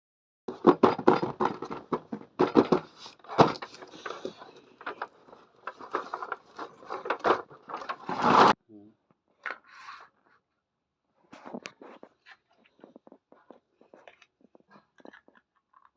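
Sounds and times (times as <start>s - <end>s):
toy kitchen pieces clattering: 0.5s - 8.6s.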